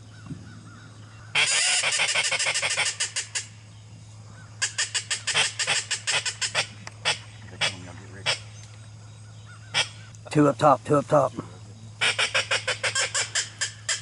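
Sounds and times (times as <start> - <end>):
duck call short high notes: 1.4 - 3.4.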